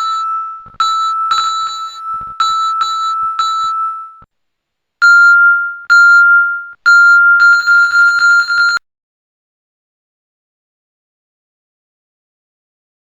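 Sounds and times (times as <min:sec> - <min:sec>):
bell-like ding: 0:00.0 - 0:04.3, 0:05.0 - 0:07.7.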